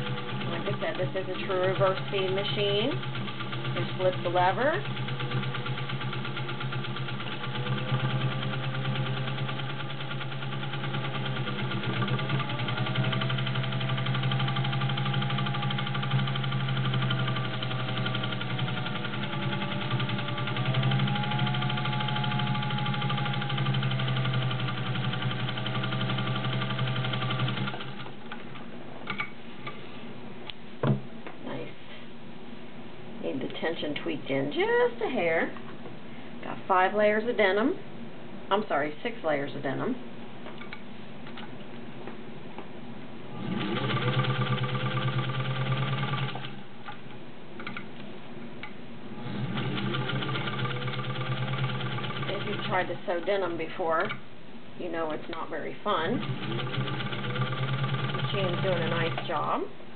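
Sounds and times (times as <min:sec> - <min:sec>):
sewing machine running: 0:00.0 - 0:28.2, 0:43.3 - 0:46.6, 0:49.2 - 0:54.2, 0:55.9 - 0:59.6.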